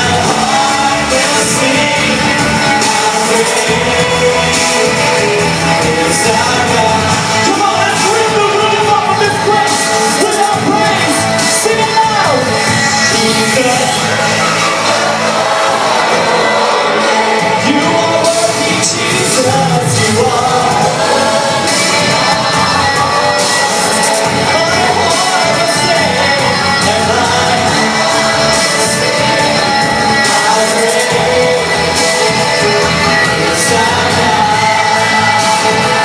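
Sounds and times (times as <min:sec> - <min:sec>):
amplified guitar: 0:00.0 - 0:36.0
live pop-rock band with singing: 0:00.0 - 0:36.0.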